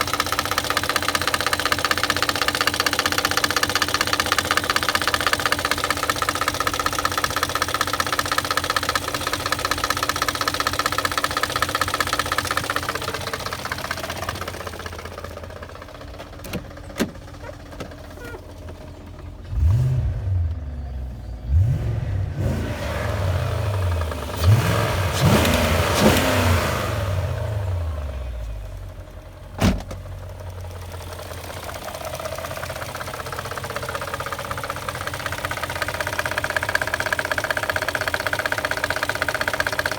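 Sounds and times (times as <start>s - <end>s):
car engine running with knock: 0.0s - 21.8s, 23.5s - 39.9s
engine revving blips: 19.4s - 28.0s.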